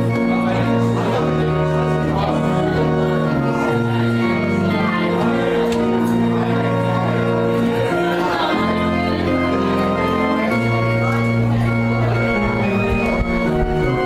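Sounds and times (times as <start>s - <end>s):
sustained chords music: 0.0s - 14.0s.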